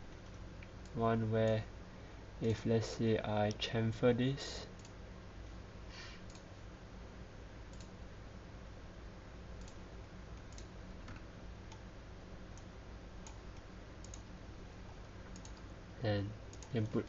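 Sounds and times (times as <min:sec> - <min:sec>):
low electrical hum: 0:00.0 - 0:17.0
computer mouse clicks: 0:04.8 - 0:05.0, 0:06.2 - 0:06.5, 0:07.7 - 0:07.9, 0:09.6 - 0:09.8, 0:10.4 - 0:11.8, 0:12.6 - 0:14.3, 0:15.3 - 0:15.7, 0:16.5 - 0:16.9.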